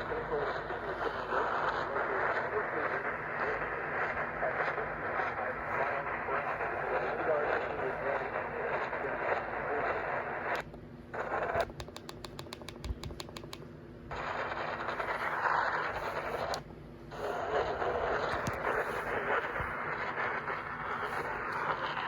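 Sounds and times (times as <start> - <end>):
radio static hiss: 0.0 - 12.0, 14.0 - 22.0
fast run of clicks: 11.6 - 13.6.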